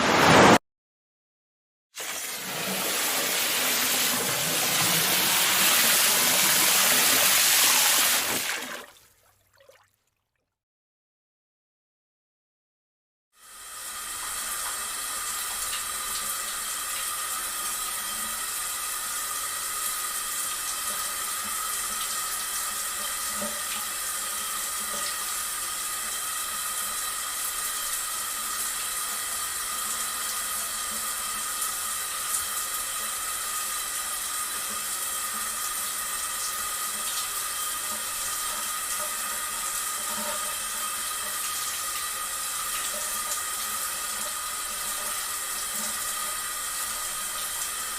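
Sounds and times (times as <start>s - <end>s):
running water rushing: 2.0s - 9.8s.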